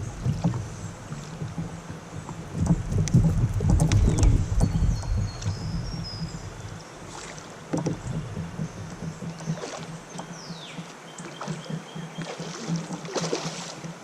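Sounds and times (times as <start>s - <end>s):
water around a kayak: 0.0s - 14.0s
sharp clicks and knocks: 2.3s - 5.6s.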